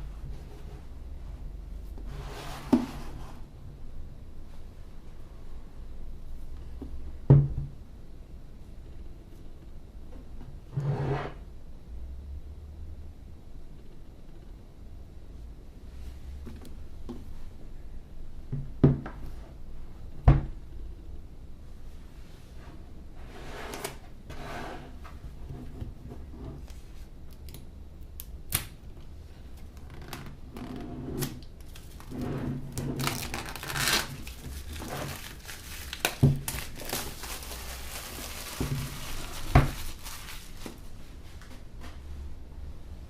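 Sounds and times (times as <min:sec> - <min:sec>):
paper and plastic rustling: 0:31.6 - 0:41.6.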